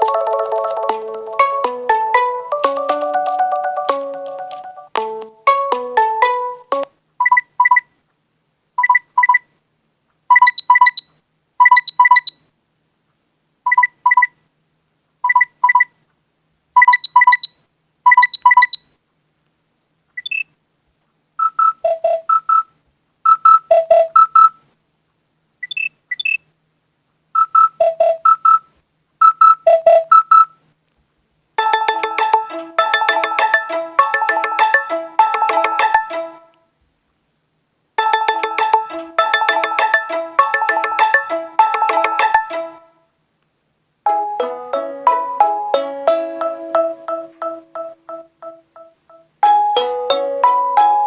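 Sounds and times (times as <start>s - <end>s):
melodic alarm tone: 0.0s - 6.9s, 31.6s - 36.2s, 38.0s - 42.6s, 44.1s - 51.0s
short double beeps: 10.3s - 12.4s.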